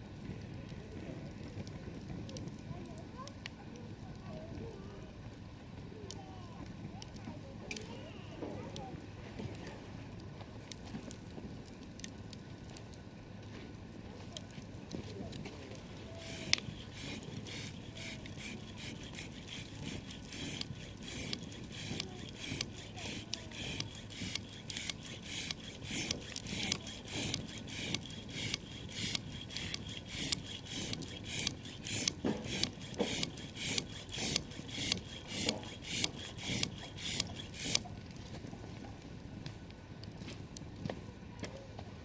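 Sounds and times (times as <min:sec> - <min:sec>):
campfire crackling: 0:10.7 - 0:13.0, 0:14.3 - 0:38.6
short raspy strokes: 0:16.0 - 0:37.9.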